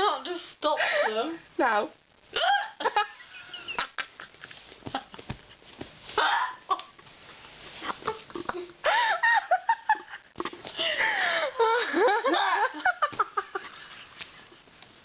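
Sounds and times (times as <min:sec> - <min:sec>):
girl hiccuping: 0:06.2 - 0:06.6.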